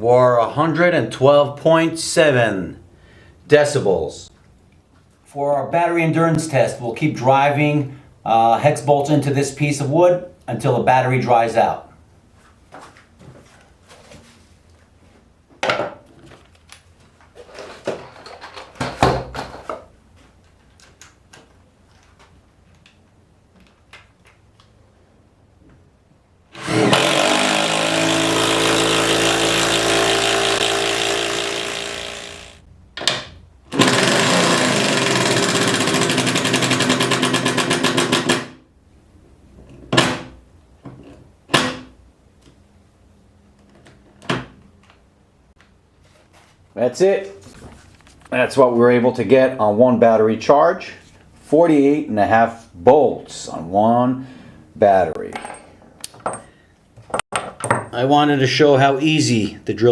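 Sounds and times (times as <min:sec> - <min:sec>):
impact driver hammering bolts: 0:26.6 - 0:38.6
handling knocks and clicks: 0:55.2 - 0:58.0.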